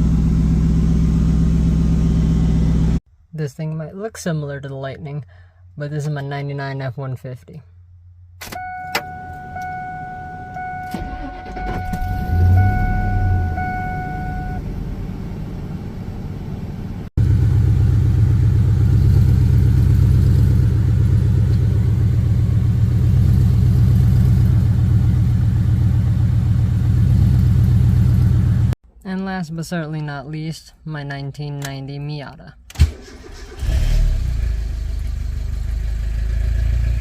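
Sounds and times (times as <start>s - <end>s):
truck engine starting and idling: 8.4s - 28.8s, 32.7s - 37.0s
warning chime pinging: 8.6s - 14.6s.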